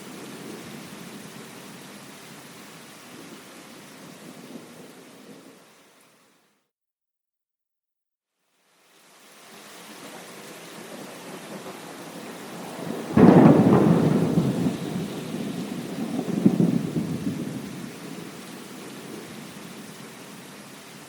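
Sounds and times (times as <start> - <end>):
steady rain: 0.0 - 6.6, 8.4 - 21.0
thunder rumbling: 10.9 - 19.3.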